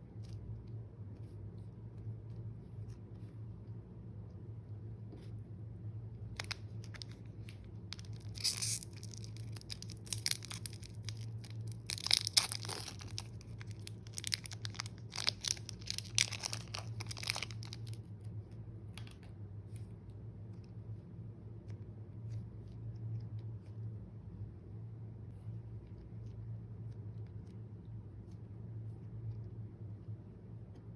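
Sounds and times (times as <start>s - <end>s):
faint low hum: 0.0s - 30.9s
slime crackling and popping: 6.3s - 18.0s.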